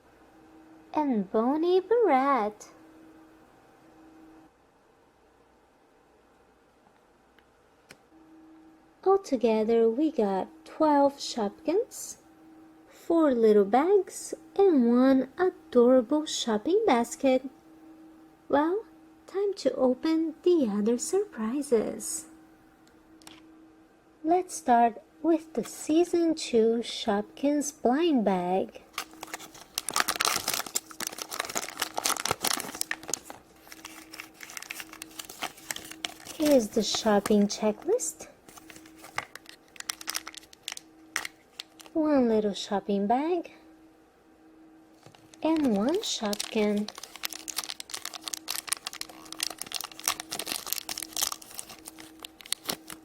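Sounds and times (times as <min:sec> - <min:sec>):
foil bag crinkling torn open: 0:28.9 - 0:42.0, 0:45.0 - 0:53.0.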